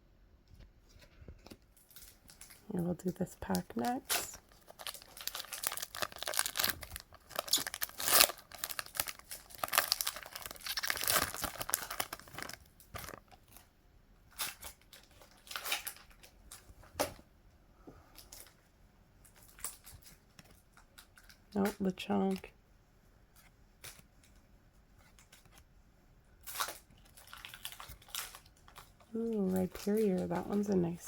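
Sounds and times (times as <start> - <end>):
foil wrapper crinkling: 1.0 - 13.7, 14.3 - 16.6, 19.3 - 21.8, 26.4 - 31.0.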